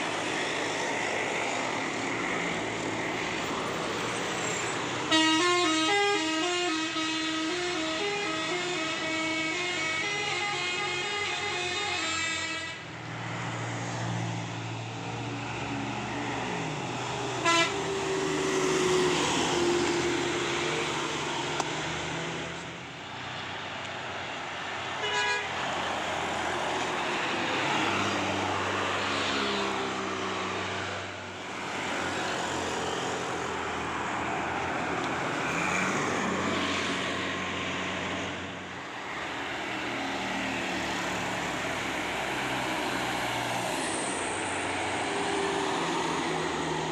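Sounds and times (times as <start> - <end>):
bus diesel engines under load: 0.0 - 46.9
bus horn blasts: 5.1 - 12.9, 17.4 - 18.0, 25.0 - 25.6.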